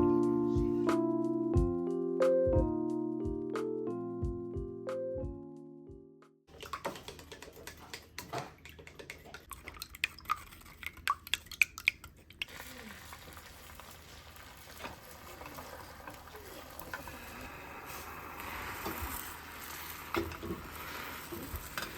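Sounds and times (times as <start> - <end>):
steady hiss: 12.5 - 21.9.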